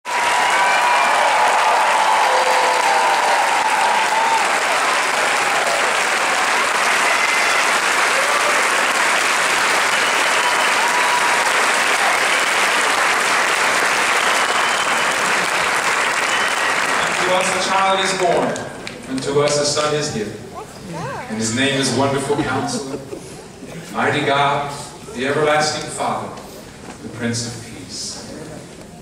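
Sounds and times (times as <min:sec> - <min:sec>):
large audience applauding: 0:00.1 - 0:19.9.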